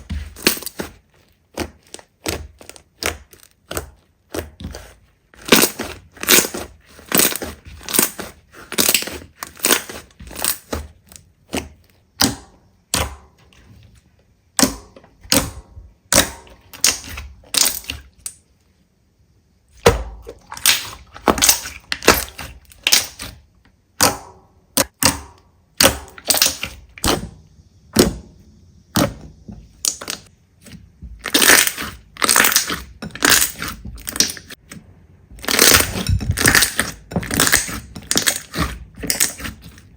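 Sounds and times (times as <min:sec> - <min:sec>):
crunchy slime crackling: 0:00.0 - 0:13.2, 0:14.6 - 0:18.4, 0:19.7 - 0:39.9.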